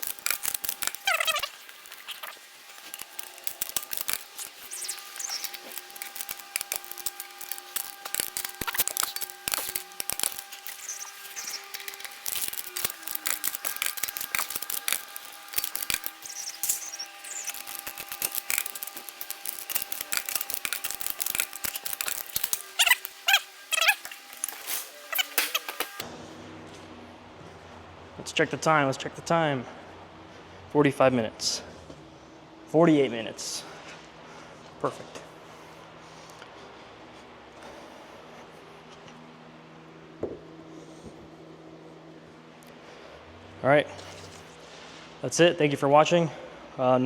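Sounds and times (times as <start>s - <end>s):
hand tools clicking and clinking: 0.0s - 26.0s
short high squeaks: 0.0s - 26.0s.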